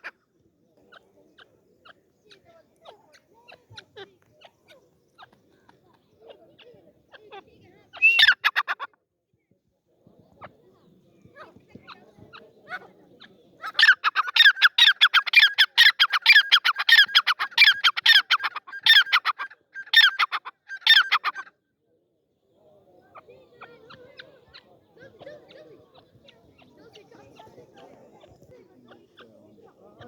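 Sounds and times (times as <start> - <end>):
bird calling shrill notes: 8.0 - 8.5.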